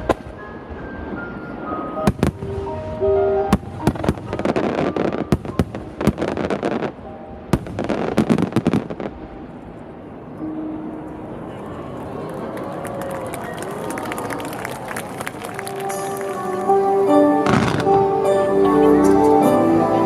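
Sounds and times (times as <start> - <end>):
music: 0.0 - 9.4, 10.4 - 11.4, 15.3 - 20.0
fireworks crackling: 2.1 - 9.6, 13.0 - 18.4.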